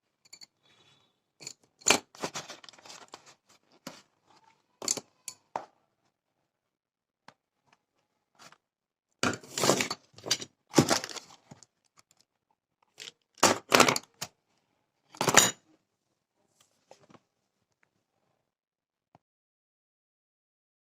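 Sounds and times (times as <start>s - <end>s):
rummaging through small objects: 1.4s - 4.0s, 9.2s - 12.2s.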